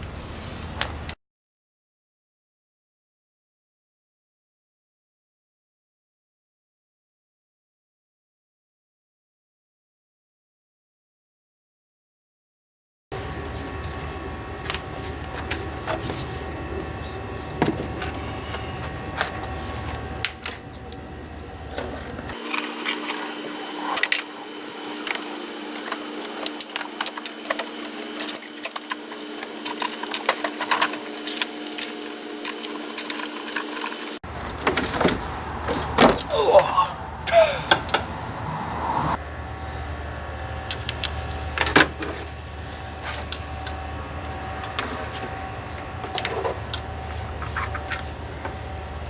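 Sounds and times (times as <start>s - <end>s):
steady low hum: 13.1s - 49.0s.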